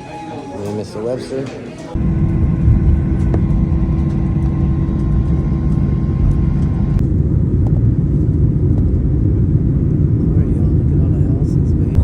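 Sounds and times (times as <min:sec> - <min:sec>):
faint steady tones: 0:01.9 - 0:07.2
moving vehicle rumble: 0:02.0 - 0:12.0.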